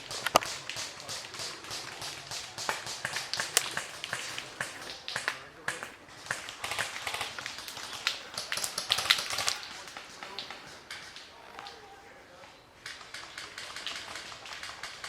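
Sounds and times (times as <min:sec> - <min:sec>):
loud crack: 0:00.0 - 0:11.3
airsoft gunfire clicks and snaps: 0:00.0 - 0:11.8, 0:12.8 - 0:15.0.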